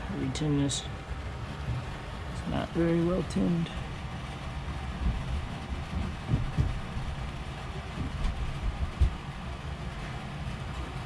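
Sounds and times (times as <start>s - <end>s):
low steady rumble: 0.0s - 11.0s
soft bumps: 4.9s - 9.3s.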